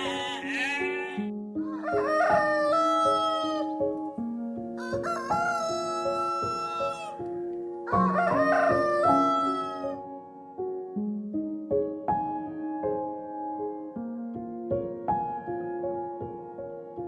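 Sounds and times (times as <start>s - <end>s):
rooster crowing: 0.0s - 3.8s, 4.8s - 7.2s, 7.8s - 10.0s
soft piano music: 0.0s - 17.0s.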